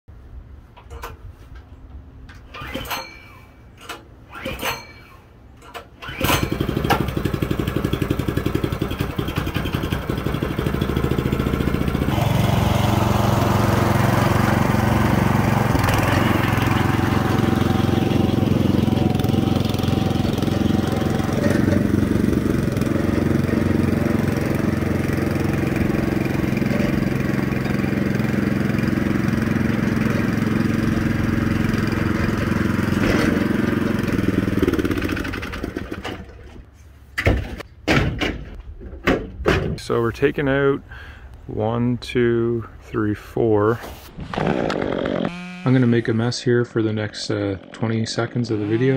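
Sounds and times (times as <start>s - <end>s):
small gasoline engine running: 6.0s - 36.5s, 44.4s - 45.8s.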